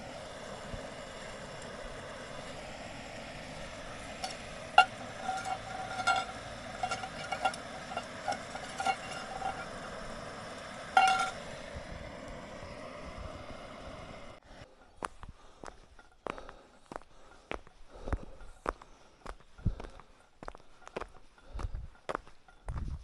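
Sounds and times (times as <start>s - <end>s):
steady hiss: 0.0s - 14.4s
metal utensil clinking on pot: 4.0s - 11.5s.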